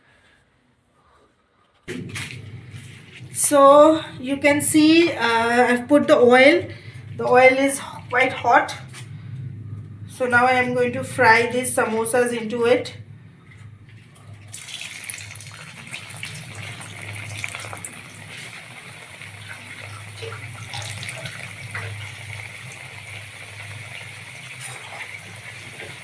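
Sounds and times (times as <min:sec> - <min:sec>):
food sizzling in hot oil: 0:14.5 - 0:26.0.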